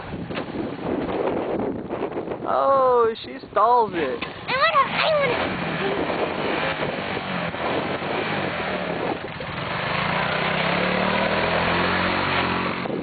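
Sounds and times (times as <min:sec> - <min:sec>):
quad bike engine revving: 0:04.0 - 0:13.0.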